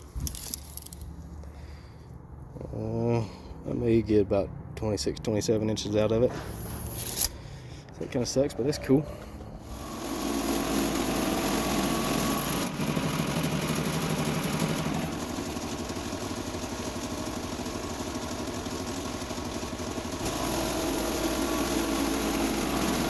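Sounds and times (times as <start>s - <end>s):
small gasoline engine running: 9.6s - 23.0s.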